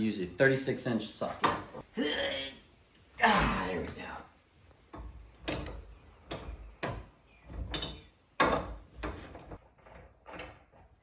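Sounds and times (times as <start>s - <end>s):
metal knocks and clanks: 4.9s - 11.0s.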